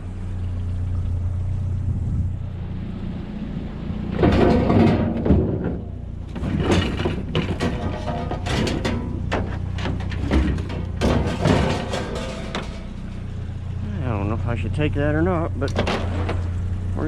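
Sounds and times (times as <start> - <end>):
scrap metal clanking and rattling: 4.1 - 13.8, 15.6 - 16.9.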